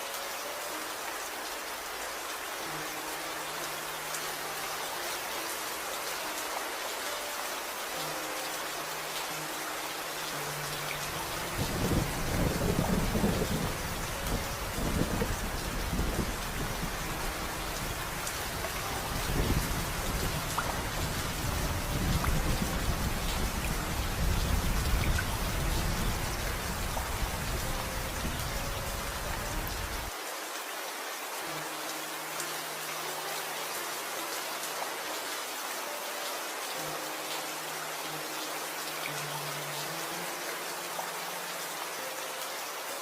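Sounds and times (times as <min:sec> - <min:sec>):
heavy rain: 0:00.0 - 0:43.0
thunder rumbling: 0:11.5 - 0:30.1.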